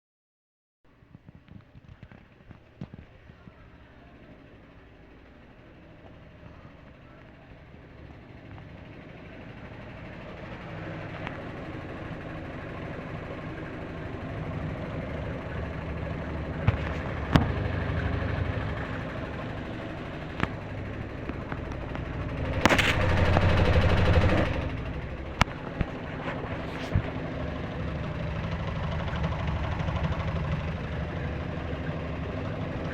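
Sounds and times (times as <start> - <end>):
washing machine spinning: 2.0 - 32.9
harsh rattling: 7.7 - 32.9.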